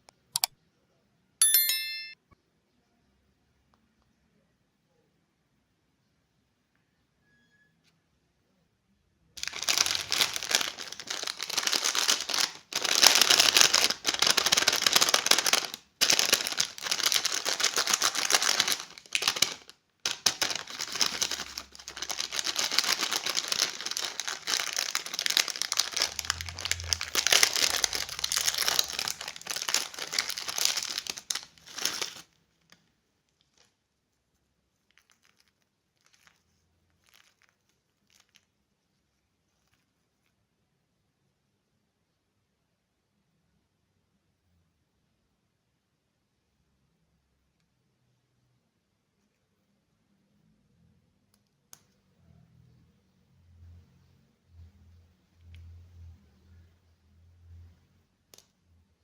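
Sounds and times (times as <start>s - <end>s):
plastic wrapper crinkling: 9.4s - 33.8s, 34.9s - 38.5s.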